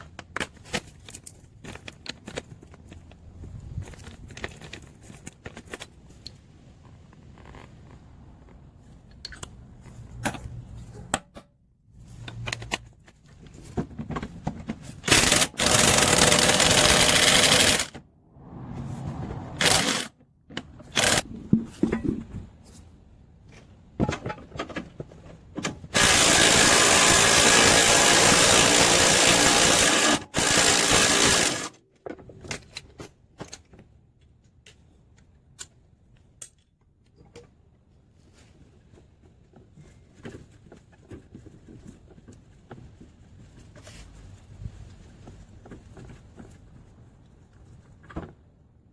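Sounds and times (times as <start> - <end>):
impact gun running in bursts: 15.1 - 17.9, 19.6 - 20.1, 21.0 - 21.2, 26.0 - 31.7
tools and parts clanking: 19.6 - 26.2, 29.8 - 37.6.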